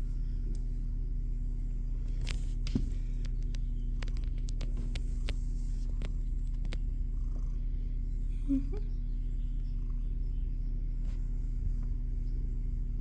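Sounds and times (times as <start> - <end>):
cat purring: 1.8 - 13.0
handling clicks and rustles: 2.2 - 6.8.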